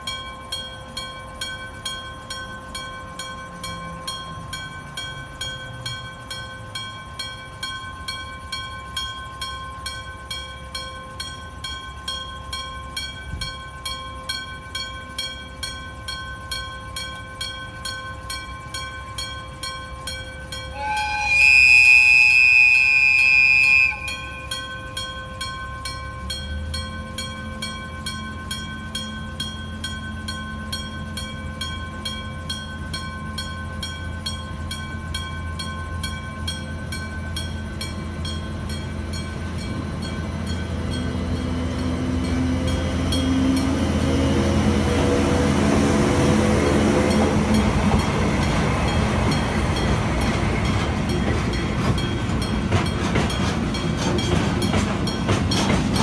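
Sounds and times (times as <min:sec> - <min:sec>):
crossing warning bell ringing: 0:00.0 - 0:56.0
locomotive rumble with motor whine: 0:19.9 - 0:56.0
high horn note: 0:20.7 - 0:24.5.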